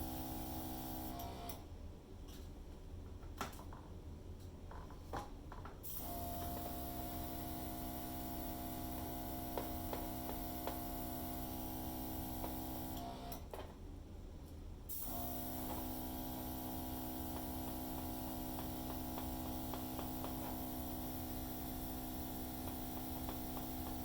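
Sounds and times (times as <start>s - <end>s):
hairdryer running: 6.0s - 13.4s.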